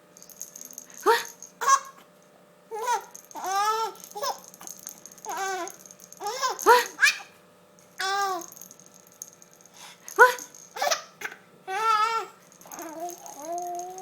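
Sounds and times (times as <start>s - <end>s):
baby laughing: 1.6s - 2.0s, 2.8s - 4.5s, 5.3s - 7.3s, 10.3s - 14.0s.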